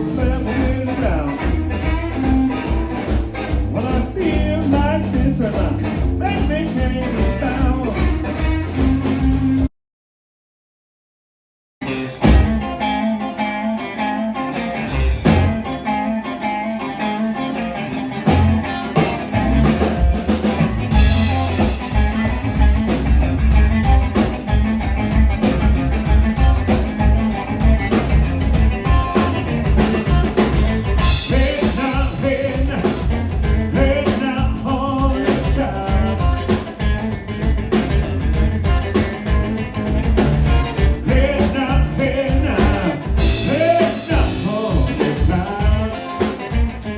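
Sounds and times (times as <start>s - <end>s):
guitar: 0.0s - 9.7s, 11.8s - 46.9s
live blues band playing: 0.0s - 9.7s, 11.8s - 46.9s
steady drum beat: 0.0s - 9.7s, 11.8s - 12.9s, 14.7s - 15.7s, 18.3s - 46.9s.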